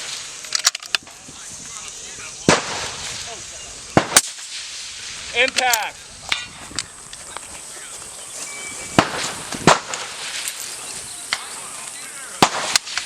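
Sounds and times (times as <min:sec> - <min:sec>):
rifle shots: 0:02.5 - 0:03.0, 0:04.0 - 0:04.4, 0:09.0 - 0:10.6, 0:12.4 - 0:13.0.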